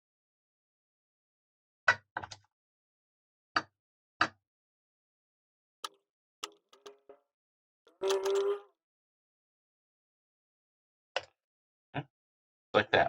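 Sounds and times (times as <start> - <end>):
sharp knocks of plastic parts: 5.8 - 7.0
light clicks: 8.0 - 8.5.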